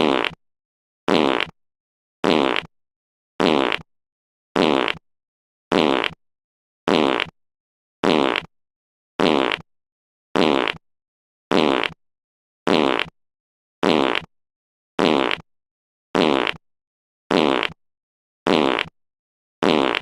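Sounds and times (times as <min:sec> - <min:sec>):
fart sound effect: 0:00.0 - 0:00.4, 0:01.1 - 0:01.6, 0:02.2 - 0:02.7, 0:03.4 - 0:03.9, 0:04.6 - 0:05.0, 0:05.7 - 0:06.2, 0:06.9 - 0:07.3, 0:08.0 - 0:08.5, 0:09.2 - 0:09.6, 0:10.4 - 0:10.8, 0:11.5 - 0:12.0, 0:12.7 - 0:13.1, 0:13.8 - 0:14.3, 0:15.0 - 0:15.4, 0:16.2 - 0:16.6, 0:17.3 - 0:17.8, 0:18.5 - 0:18.9, 0:19.6 - 0:20.0.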